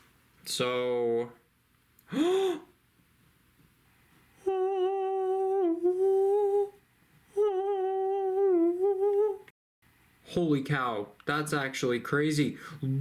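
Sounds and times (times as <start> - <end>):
man humming: 4.4 - 9.5, 12.8 - 13.0.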